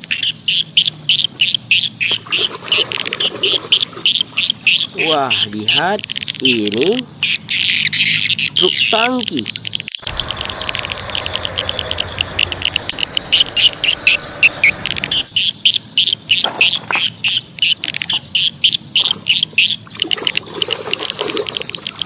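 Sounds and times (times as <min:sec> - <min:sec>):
high chirps: 0:04.1 - 0:20.2
water running: 0:10.0 - 0:15.3.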